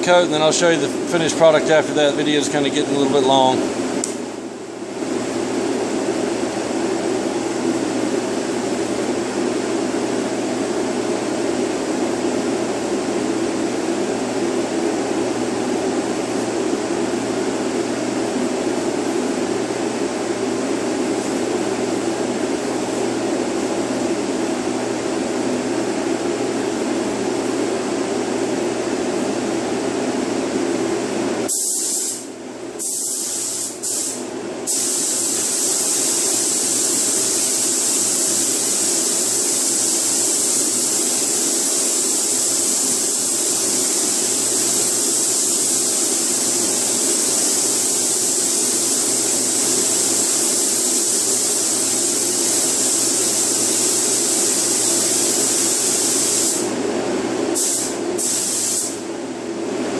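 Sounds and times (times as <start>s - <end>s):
paint spray gun hissing: 31.5s - 56.7s, 57.6s - 59.0s.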